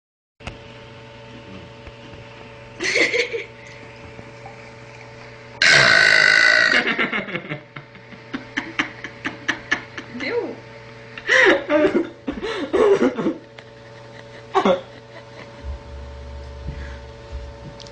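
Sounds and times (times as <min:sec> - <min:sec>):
faint background hum: 0:00.5 - 0:17.9
girl burping: 0:05.6 - 0:06.8.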